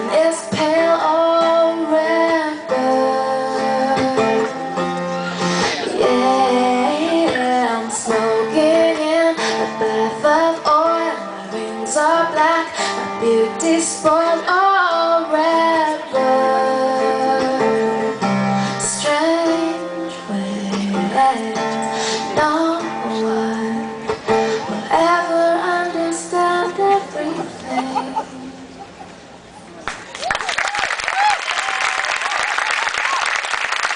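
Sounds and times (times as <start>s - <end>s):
woman singing slow melody: 0.0s - 4.8s, 5.8s - 28.7s
guitar accompaniment: 0.0s - 29.7s.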